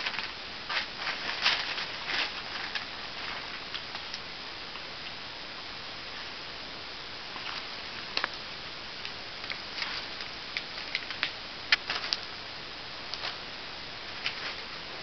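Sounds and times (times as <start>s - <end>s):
crinkling wrapping paper: 0.0s - 4.2s, 9.4s - 12.5s, 13.1s - 13.5s, 14.1s - 15.0s
steady hiss: 0.0s - 15.0s.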